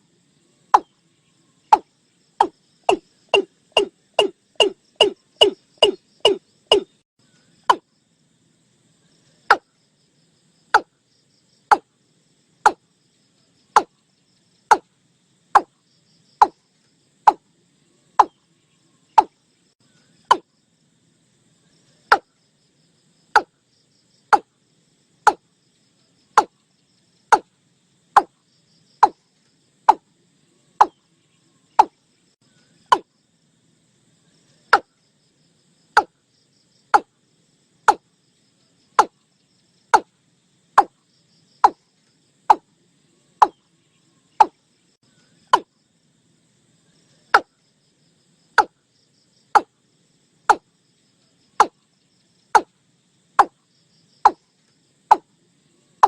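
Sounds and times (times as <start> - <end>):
bird calling short sharp notes: 1.7 - 7.0.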